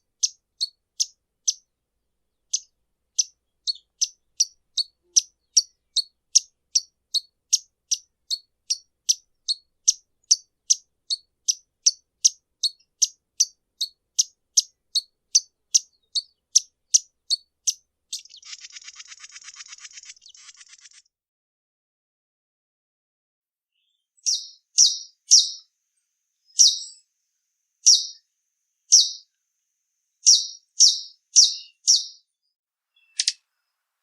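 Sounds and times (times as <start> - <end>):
buzzy rattling bird trill: 2.5 - 21.1, 24.2 - 25.6, 26.5 - 27.0, 27.8 - 28.2, 28.9 - 29.2, 30.2 - 32.2.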